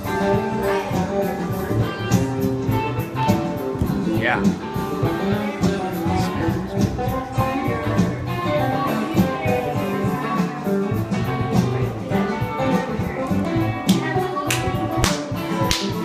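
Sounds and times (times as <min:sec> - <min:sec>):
plucked guitar music: 0:00.0 - 0:16.0.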